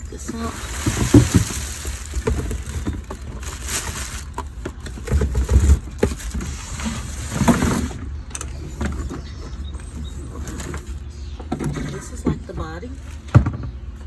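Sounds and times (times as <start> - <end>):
cardboard packaging rustling: 0.0 - 8.0.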